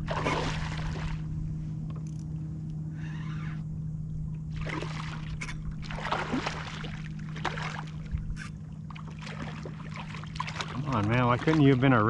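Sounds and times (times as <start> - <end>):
water splashing: 0.0 - 1.2, 4.5 - 12.0
steady low hum: 0.0 - 12.0.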